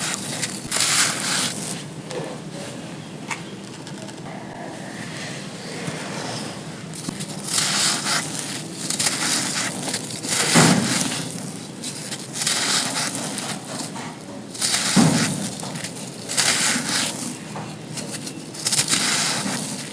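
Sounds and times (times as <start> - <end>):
gritty chunks crunching: 0.0 - 2.8, 6.8 - 19.9.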